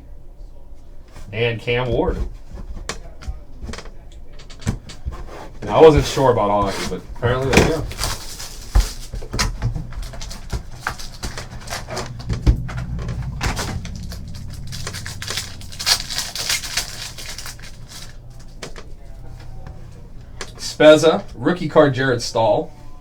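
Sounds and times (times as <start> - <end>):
low steady hum: 8.0 - 23.0
card wrappers crinkling and tearing: 14.9 - 18.2.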